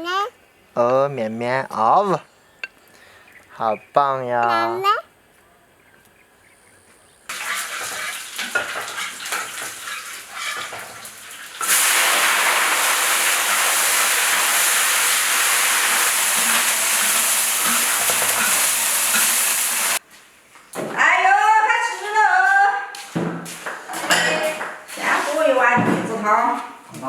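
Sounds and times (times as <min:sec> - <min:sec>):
sizzling clatter: 0:07.3 - 0:20.0
loud steady hiss: 0:11.6 - 0:20.0.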